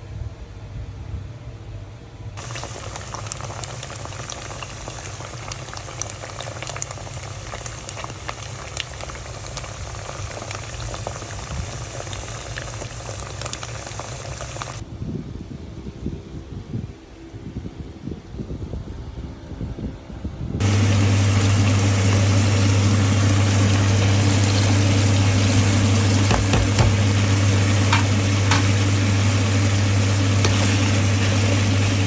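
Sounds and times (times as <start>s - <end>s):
steady low hum: 0.0s - 32.0s
food bubbling and crackling: 2.4s - 14.8s, 20.6s - 32.0s.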